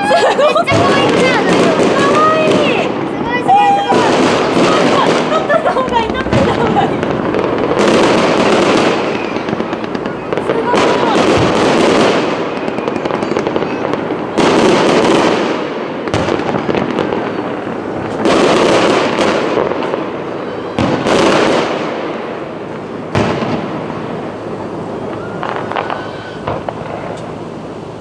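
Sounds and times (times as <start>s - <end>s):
fireworks bursting: 0.0s - 28.0s.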